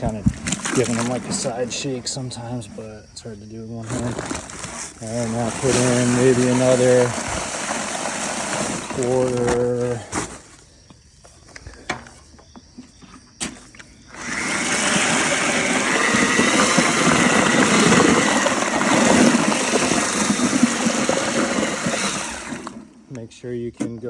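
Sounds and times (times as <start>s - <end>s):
drill mixing wet cement: 0.0s - 2.9s, 3.9s - 10.1s, 14.1s - 23.0s.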